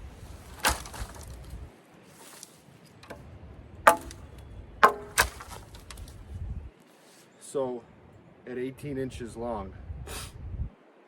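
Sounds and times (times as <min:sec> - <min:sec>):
hatchet chopping wood: 0:00.6 - 0:01.4, 0:03.9 - 0:06.1.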